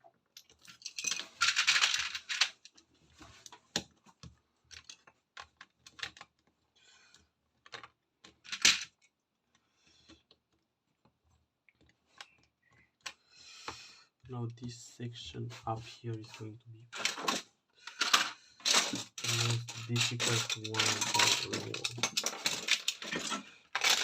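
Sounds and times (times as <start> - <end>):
plastic bricks rattling: 0.4 - 2.7, 16.9 - 24.0.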